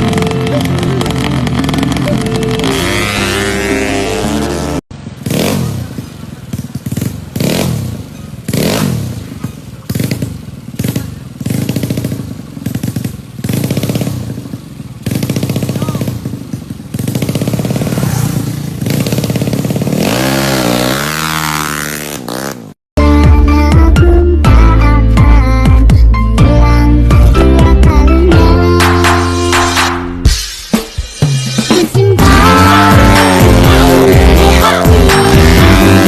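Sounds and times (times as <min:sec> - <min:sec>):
motorcycle engine revving: 0:00.0 - 0:22.8, 0:31.6 - 0:36.0.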